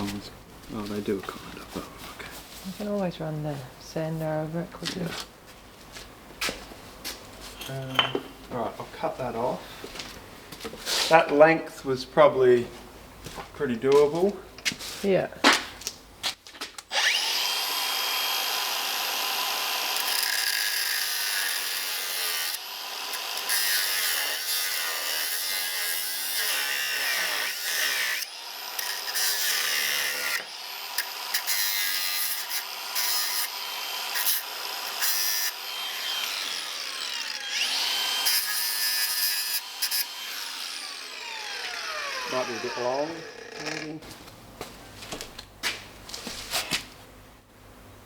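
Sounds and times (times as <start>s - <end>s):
power tool cutting metal rod: 16.9s - 44.0s.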